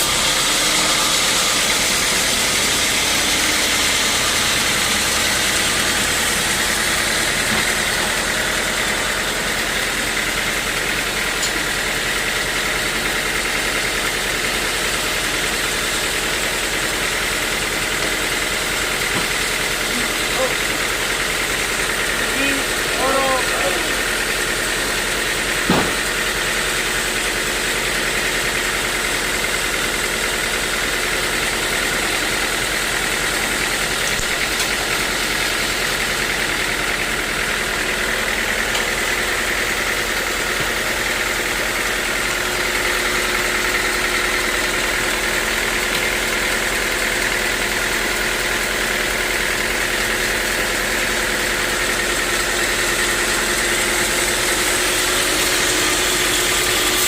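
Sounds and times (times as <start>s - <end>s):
sawmill machinery drone: 0.0s - 57.0s
short knock: 25.7s - 26.0s.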